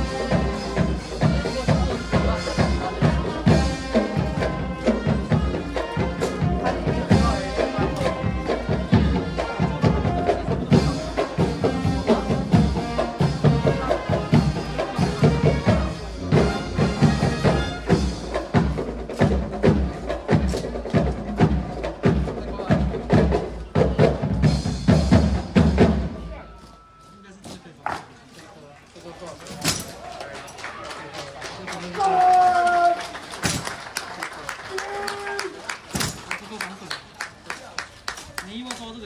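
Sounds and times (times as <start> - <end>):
drums beating: 0.0 - 26.9
marching band playing: 0.0 - 27.4, 31.8 - 38.3.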